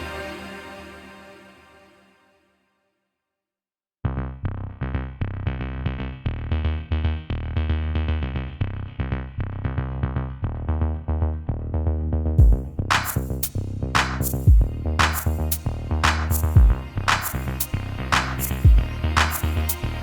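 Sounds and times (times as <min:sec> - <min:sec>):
electronic beat music: 0:12.4 - 0:20.0.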